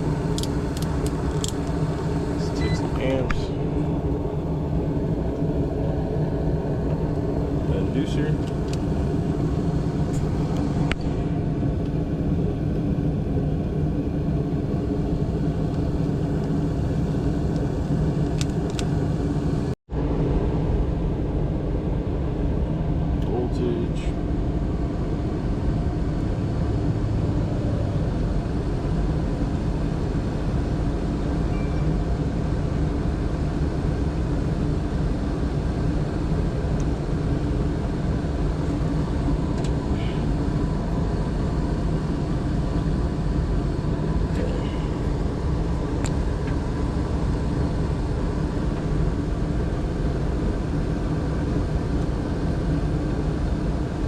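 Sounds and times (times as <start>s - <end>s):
furnace humming: 0.0s - 19.8s, 34.7s - 54.0s.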